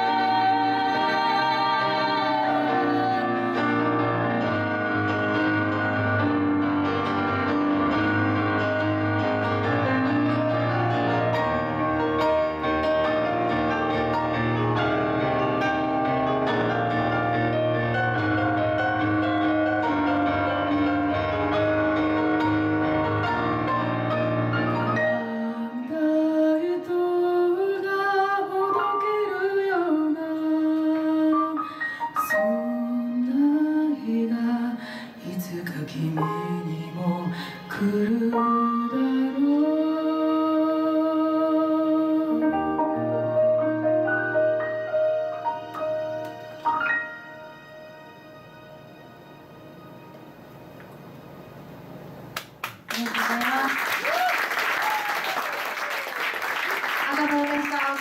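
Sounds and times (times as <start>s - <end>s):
person singing: 0.0s - 6.3s, 25.0s - 43.2s
keyboard: 0.0s - 27.3s, 35.9s - 52.0s.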